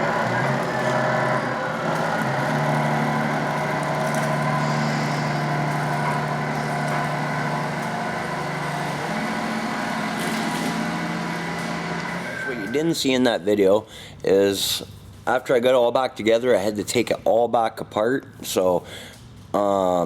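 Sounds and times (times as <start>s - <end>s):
electric motor and gearbox whine: 0.0s - 13.0s.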